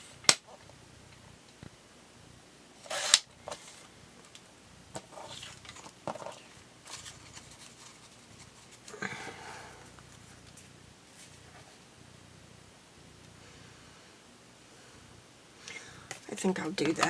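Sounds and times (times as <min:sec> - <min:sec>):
paper rustling and scraping: 0:02.8 - 0:03.9, 0:05.0 - 0:09.0.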